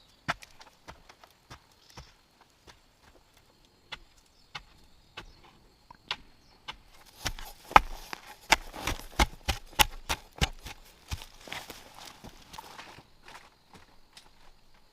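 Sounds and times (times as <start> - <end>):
sharp knocks and taps: 6.1 - 11.3.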